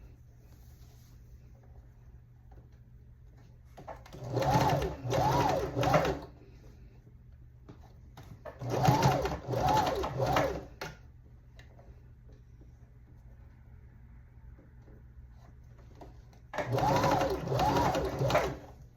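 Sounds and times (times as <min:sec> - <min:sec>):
sewing machine stitching: 0:03.8 - 0:06.3, 0:08.4 - 0:11.0, 0:16.5 - 0:18.8.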